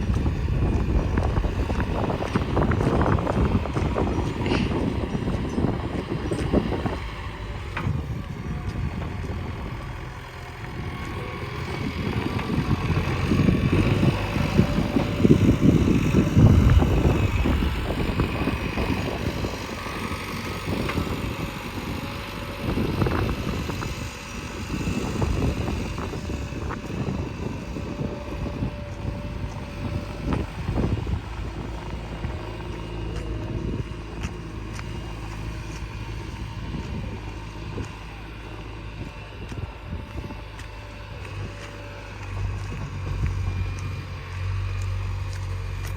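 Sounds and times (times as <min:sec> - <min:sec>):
diesel engine running: 0:00.0 - 0:45.9.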